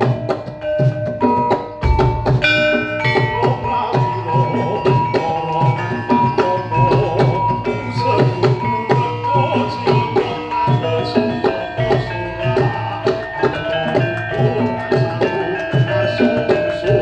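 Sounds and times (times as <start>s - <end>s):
gongs: 0.0s - 17.0s
hand drum strokes: 0.0s - 17.0s
ringing metal keyed instruments: 0.0s - 17.0s
long high held note: 1.8s - 3.9s.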